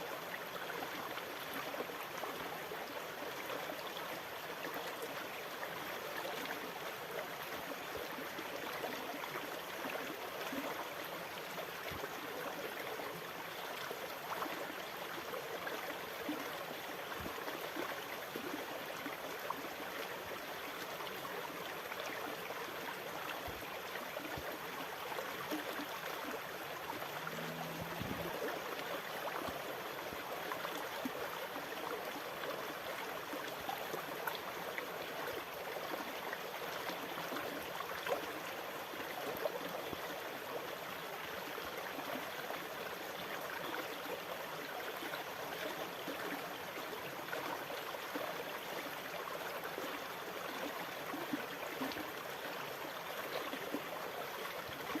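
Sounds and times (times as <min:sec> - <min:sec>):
faint low hum: 0:26.8 - 0:29.5.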